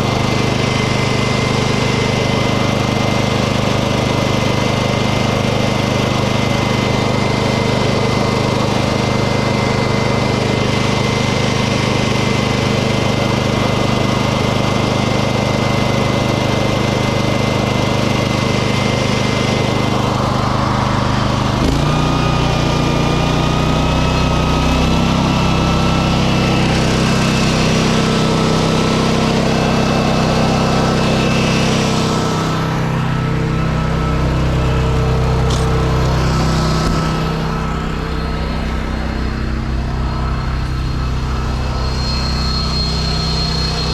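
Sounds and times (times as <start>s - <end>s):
engine running: 0.0s - 43.9s
thin rising whine: 23.6s - 43.9s.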